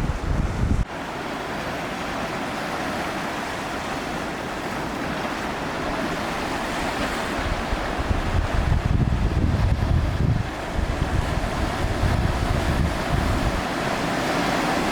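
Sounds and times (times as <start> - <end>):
wind buffeting microphone: 0.0 - 0.9, 5.9 - 14.9
sea surf washing on beach: 0.0 - 14.9.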